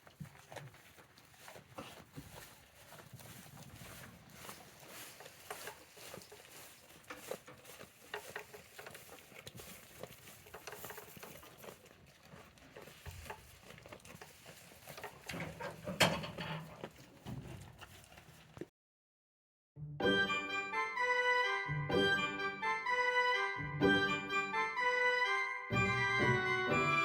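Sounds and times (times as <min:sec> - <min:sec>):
goats scuffling: 0:00.0 - 0:18.7
goats tapping and rustling: 0:00.0 - 0:18.7.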